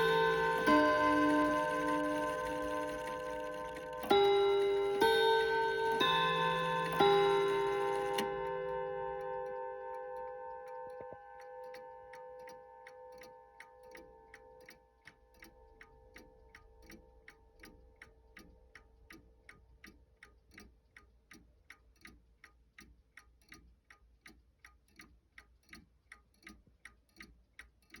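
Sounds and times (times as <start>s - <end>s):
ringing chime rods: 0.0s - 11.8s
clock ticking: 0.0s - 28.0s.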